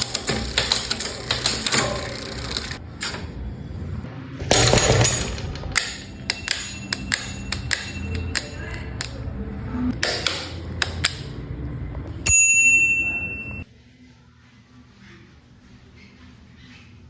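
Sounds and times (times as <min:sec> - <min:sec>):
clicks and knocks: 0:04.4 - 0:09.2
bicycle bell ring: 0:04.5 - 0:09.1, 0:12.3 - 0:13.6.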